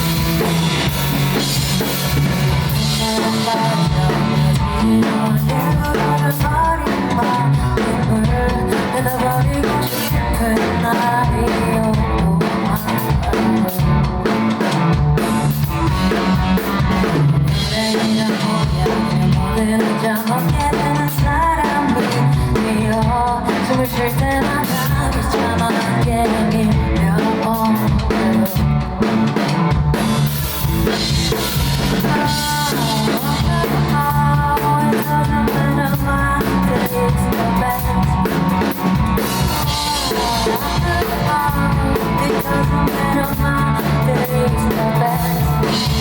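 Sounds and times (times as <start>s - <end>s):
drum kit hits: 0.0s - 4.8s
band music: 0.0s - 46.0s
person singing: 1.8s - 29.3s, 31.4s - 46.0s.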